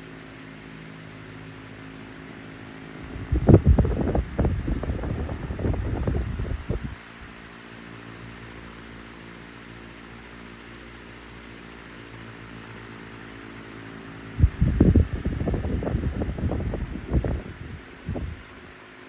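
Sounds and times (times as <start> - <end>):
fan air hiss: 0.0 - 19.0
fan motor humming: 0.8 - 7.5, 12.1 - 19.0.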